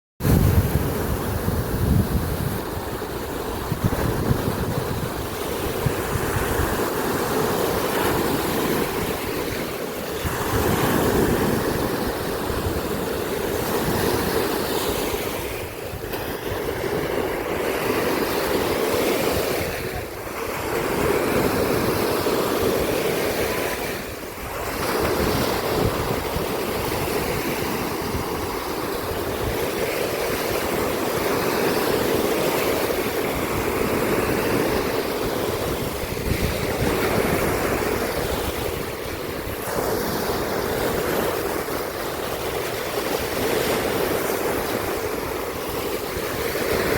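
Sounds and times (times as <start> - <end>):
surf washing onto shore: 0.2 - 46.9
wind buffeting microphone: 0.2 - 46.9.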